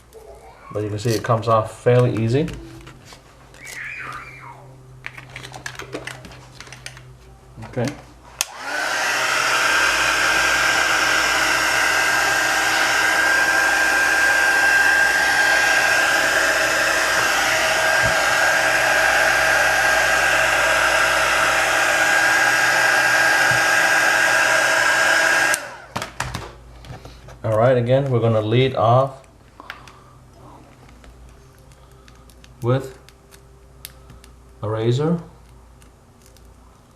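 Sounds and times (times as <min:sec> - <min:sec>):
heat gun blowing with whine: 0:08.4 - 0:26.2.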